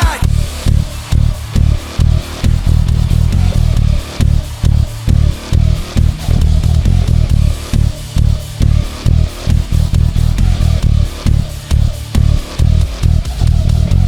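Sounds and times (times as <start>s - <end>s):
band music with drums: 0.0s - 14.0s
electric bass guitar: 0.2s - 14.0s.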